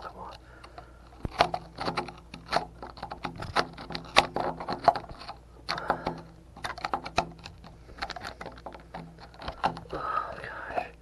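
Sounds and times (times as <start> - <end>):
screwdriver scraping rusty metal: 1.2 - 9.9.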